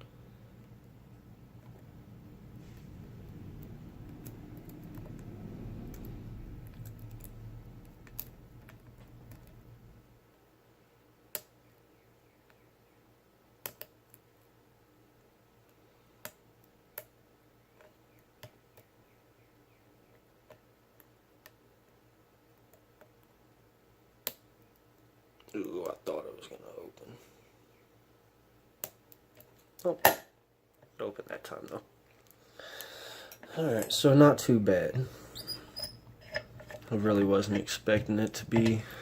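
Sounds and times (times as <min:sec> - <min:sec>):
low rumble: 0:01.4 - 0:10.0.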